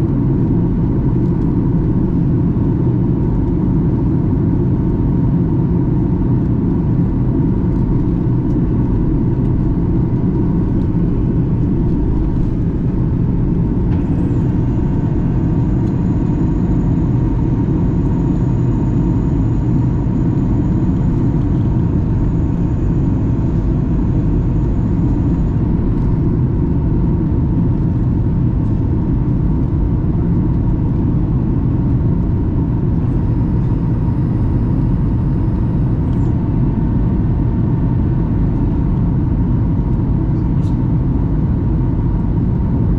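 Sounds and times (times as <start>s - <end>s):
airplane cabin rumble: 0.0s - 42.9s
faint high whine: 7.5s - 30.0s, 32.6s - 38.0s.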